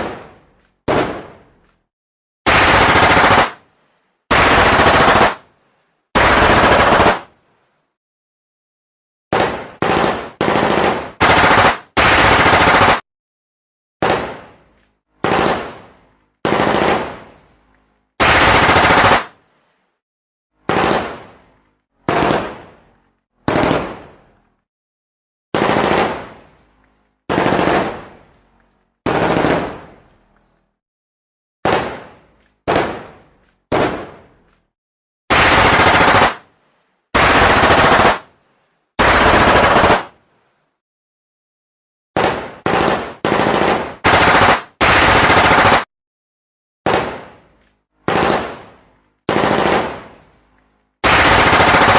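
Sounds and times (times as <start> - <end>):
gunfire bursts and shots: 0.0 - 1.5, 2.5 - 3.7, 4.3 - 5.5, 6.2 - 7.4, 9.3 - 13.0, 14.0 - 17.4, 18.2 - 19.4, 20.6 - 24.4, 25.5 - 26.5, 27.3 - 28.2, 29.0 - 30.1, 31.6 - 34.4, 35.3 - 36.5, 37.2 - 38.4, 39.0 - 40.2, 42.2 - 45.9, 46.8 - 50.3, 51.0 - 51.9.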